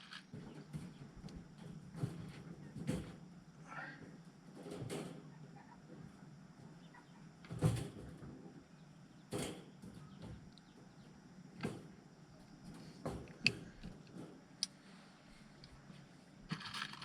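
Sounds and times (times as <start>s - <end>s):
wire mesh panels clicking and rattling: 0.0s - 3.3s, 4.4s - 8.6s, 9.3s - 12.0s, 12.6s - 14.7s, 16.5s - 17.0s.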